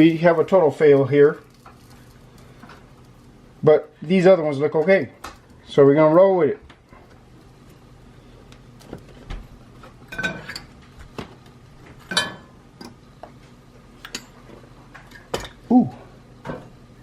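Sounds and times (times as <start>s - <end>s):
utensils and dishes clinking: 10.1s - 10.8s, 12.0s - 13.0s.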